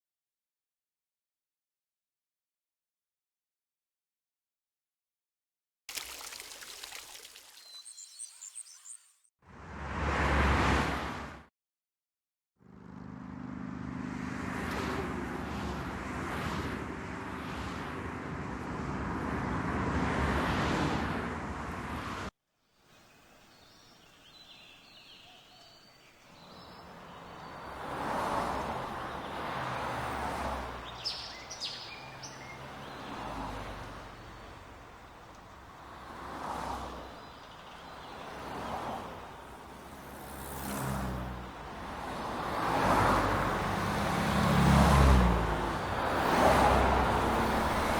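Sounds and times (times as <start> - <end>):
high bird chirps: 7.5 - 9.3, 30.8 - 33.2
passing vehicles: 9.5 - 11.5, 12.6 - 22.3, 26.2 - 47.9
road traffic rumble: 12.6 - 22.3, 23.3 - 47.9.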